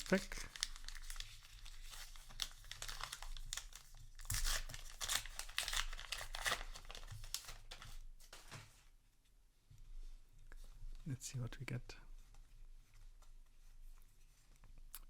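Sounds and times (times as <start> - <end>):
foil wrapper tearing and crinkling: 0.0 - 7.9.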